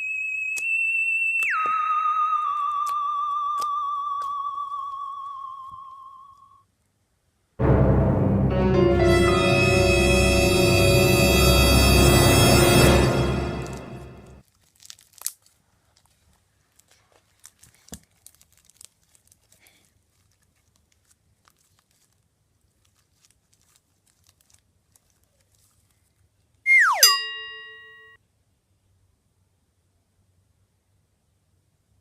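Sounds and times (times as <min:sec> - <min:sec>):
loud tone dropping in pitch: 0:07.6 - 0:14.4
slime crackling and popping: 0:14.4 - 0:25.8.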